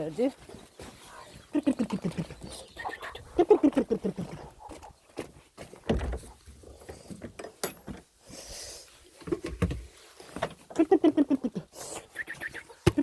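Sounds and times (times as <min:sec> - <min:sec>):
chicken clucking: 0:01.1 - 0:05.0, 0:10.8 - 0:13.0.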